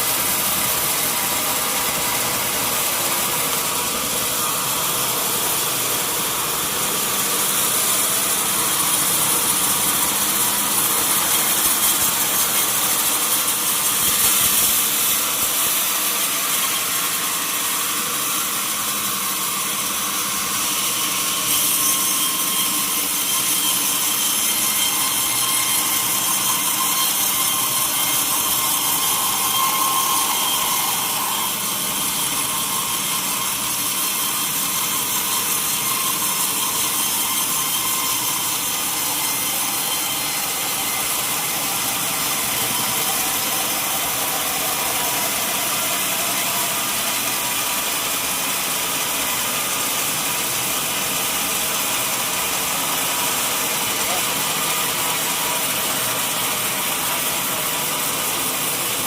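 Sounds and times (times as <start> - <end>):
saw cutting through log: 0.0 - 59.0.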